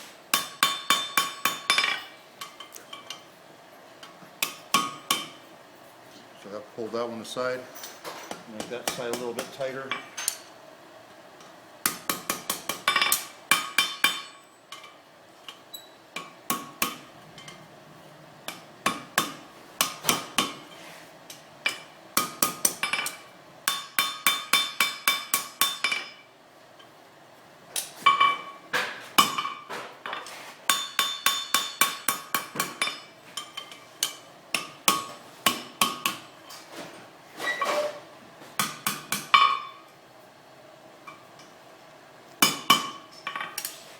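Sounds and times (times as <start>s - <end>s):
hammer striking steel on anvil: 0.3s - 3.2s, 4.4s - 5.4s, 8.6s - 10.5s, 11.8s - 14.9s, 16.2s - 17.6s, 18.5s - 20.6s, 21.7s - 26.2s, 29.2s - 29.7s, 30.7s - 36.4s, 38.6s - 39.8s, 42.4s - 43.8s.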